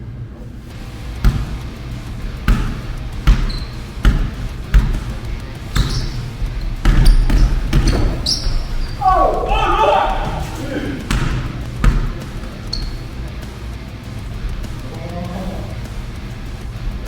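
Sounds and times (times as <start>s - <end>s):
basketball bouncing on gym floor: 0.8s - 13.5s
shoes squeaking on court: 0.8s - 13.8s.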